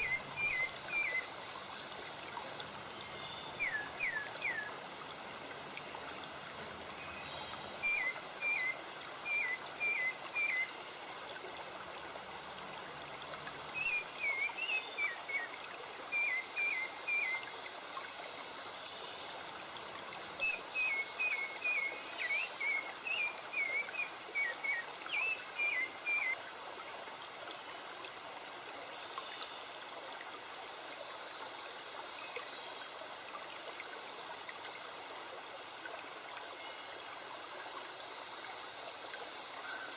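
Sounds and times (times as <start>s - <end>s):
songbird singing: 0.0s - 1.4s, 2.4s - 4.8s, 6.9s - 10.8s, 13.7s - 17.5s, 20.4s - 26.4s
stream trickling: 0.0s - 39.9s.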